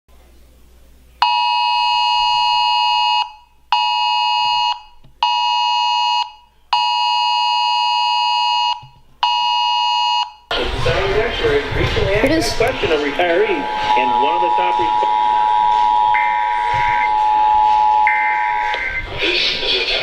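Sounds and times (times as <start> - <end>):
harsh two-tone alarm: 1.2 - 10.7, 12.8 - 19.2.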